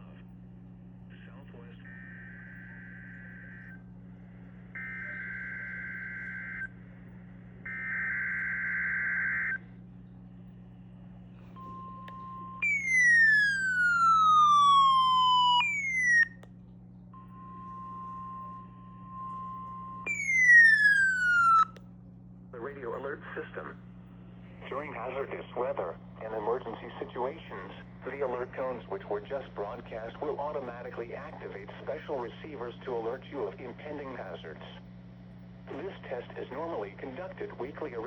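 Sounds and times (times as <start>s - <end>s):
low steady hum: 0.0s - 38.0s
steady warning alarm tone: 1.8s - 9.7s, 11.4s - 16.4s, 17.2s - 21.8s
siren-like receiver alarm: 1.9s - 3.9s, 4.7s - 6.9s, 7.6s - 9.7s, 11.4s - 16.4s, 17.2s - 21.8s.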